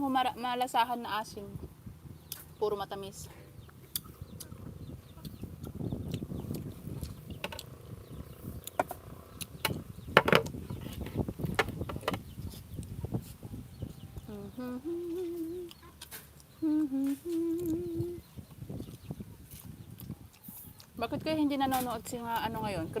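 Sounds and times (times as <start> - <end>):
sharp clicks and crackles: 5.2 - 7.7.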